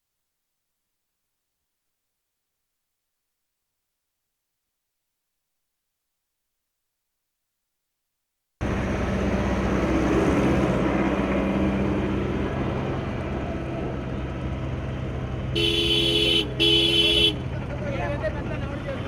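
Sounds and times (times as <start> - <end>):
street traffic: 8.6 - 19.0
vehicle engine running: 8.6 - 19.0
vehicle horn honking: 15.5 - 17.5.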